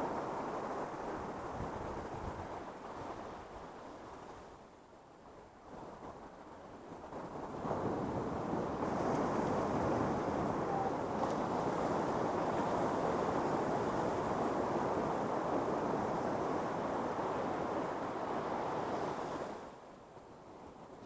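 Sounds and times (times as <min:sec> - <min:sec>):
ocean surf breaking: 0:07.5 - 0:19.7.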